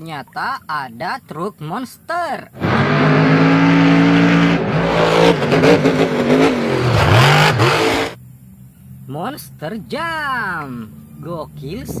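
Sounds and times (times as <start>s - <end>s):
truck engine revving loudly: 2.6s - 8.2s.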